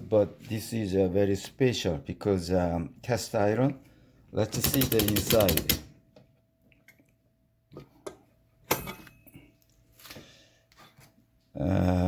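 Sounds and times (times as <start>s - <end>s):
typewriter clicks: 4.5s - 5.9s
typewriter knock: 4.6s - 5.9s.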